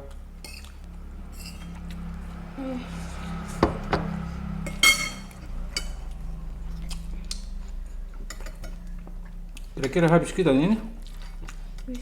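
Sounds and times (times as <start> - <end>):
steady low hum: 0.0 - 12.0
cutlery clinking against plates: 0.4 - 0.8, 4.6 - 6.0, 8.2 - 8.9.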